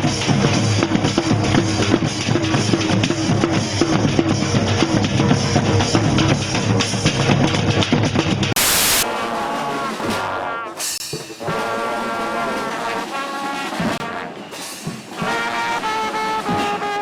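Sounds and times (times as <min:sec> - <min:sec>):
drum kit playing: 0:00.0 - 0:17.0
burst of hiss: 0:08.6 - 0:09.1
horn playing notes: 0:08.6 - 0:14.5, 0:15.2 - 0:17.0.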